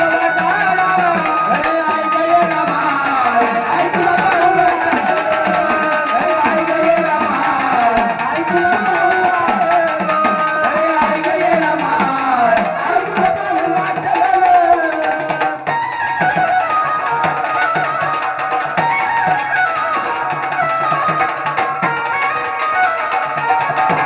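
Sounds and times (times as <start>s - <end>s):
wavering melody: 0.0s - 14.4s
folk drum rhythm: 0.0s - 24.0s.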